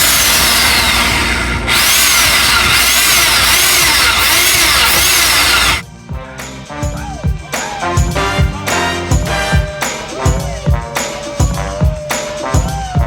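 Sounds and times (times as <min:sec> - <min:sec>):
power drill whining: 0:00.0 - 0:05.8
upbeat music with steady beat: 0:05.8 - 0:13.0.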